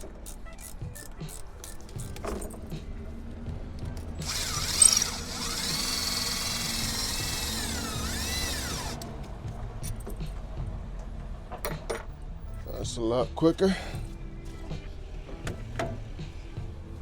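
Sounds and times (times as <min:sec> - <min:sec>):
cordless power tool whirring: 0:04.2 - 0:09.0.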